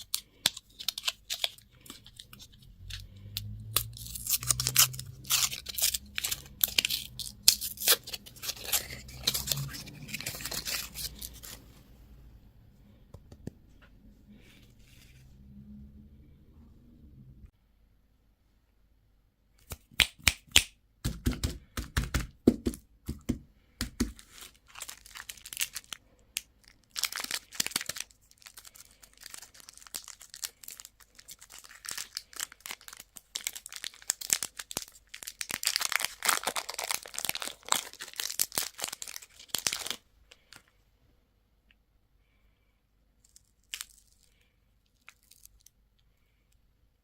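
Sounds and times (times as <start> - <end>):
candy wrappers crinkling and tearing: 0.0 - 11.6, 23.8 - 40.7, 43.2 - 46.0.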